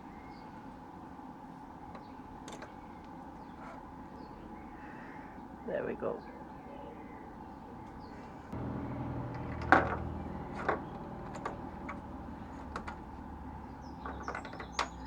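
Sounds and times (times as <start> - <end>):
low steady hum: 8.6 - 13.7.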